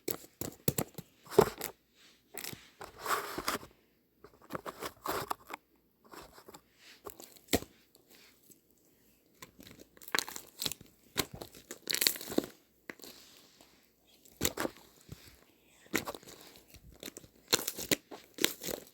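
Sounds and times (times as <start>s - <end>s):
crunching and crinkling: 9.4s - 18.9s.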